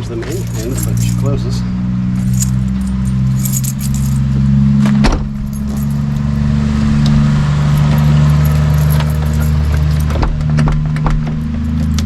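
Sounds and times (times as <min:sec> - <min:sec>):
keys jangling: 0:00.2 - 0:01.4, 0:02.2 - 0:04.4, 0:05.3 - 0:06.4, 0:07.6 - 0:10.2, 0:11.4 - 0:12.0.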